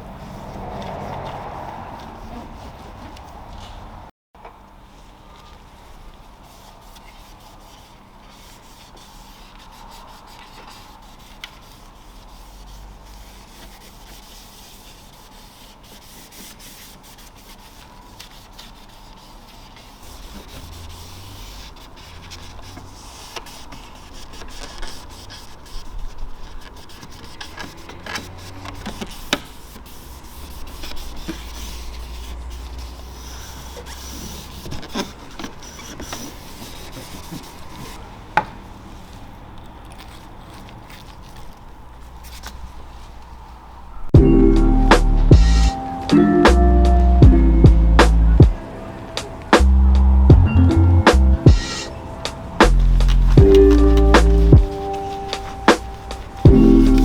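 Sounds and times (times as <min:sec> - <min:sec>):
hand scrubbing surfaces: 0:06.4 - 0:38.0, 0:44.3 - 0:57.0.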